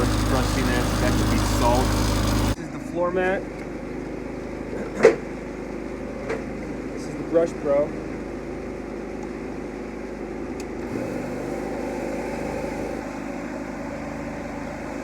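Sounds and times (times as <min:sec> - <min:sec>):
brush machine motor hum: 0:00.0 - 0:02.6.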